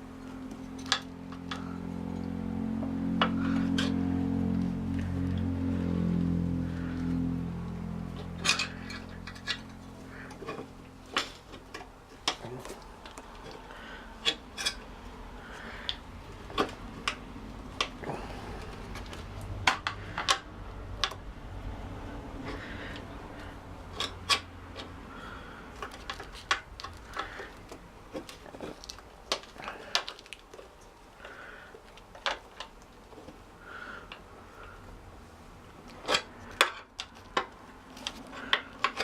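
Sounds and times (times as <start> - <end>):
low hum: 0.0 - 29.8.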